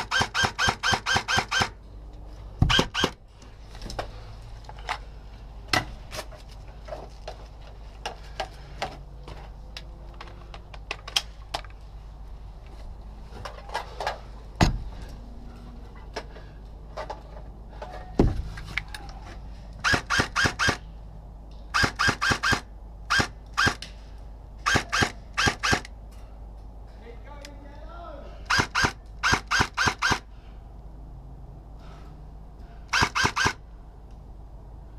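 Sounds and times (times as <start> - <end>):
airsoft gun shots: 0.0 - 1.8, 2.6 - 3.2, 19.8 - 20.8, 21.7 - 23.8, 24.6 - 25.8, 28.5 - 30.3, 32.9 - 33.6
heavy thumps: 14.6 - 15.1, 18.0 - 18.8.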